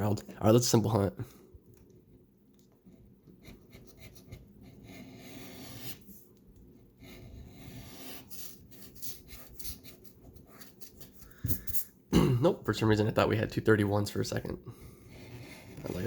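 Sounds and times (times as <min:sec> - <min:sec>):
lottery ticket scratching: 0:15.4 - 0:16.0.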